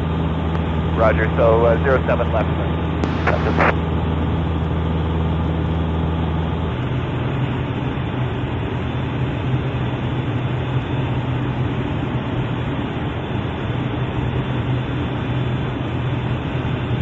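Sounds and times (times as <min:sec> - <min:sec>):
propeller plane engine in flight: 0:00.0 - 0:17.0.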